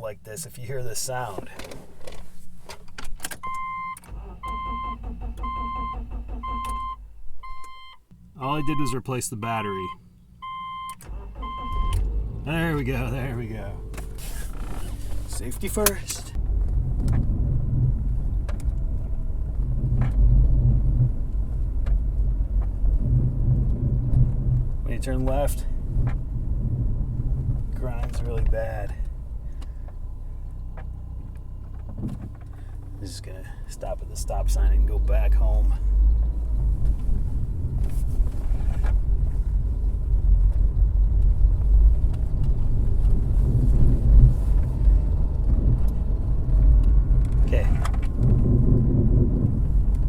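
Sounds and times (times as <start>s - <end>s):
wheel bearing rumbling grind: 11.1s - 50.0s.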